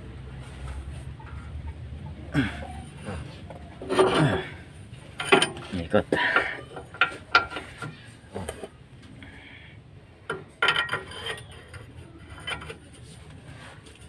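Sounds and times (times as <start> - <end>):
hand tools clinking on metal: 2.4 - 8.7, 10.6 - 13.2.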